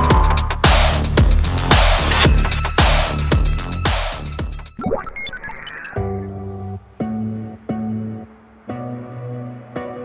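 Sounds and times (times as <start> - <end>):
electronic dance beat: 0.0 - 4.8.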